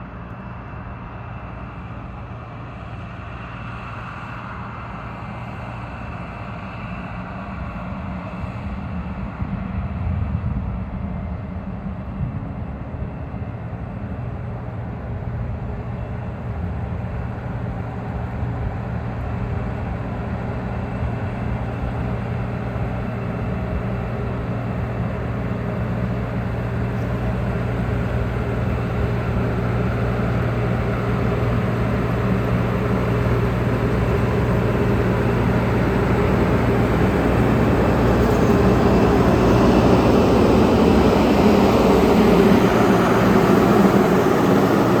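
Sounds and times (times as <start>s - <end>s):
farm machine engine humming: 16.6s - 45.0s.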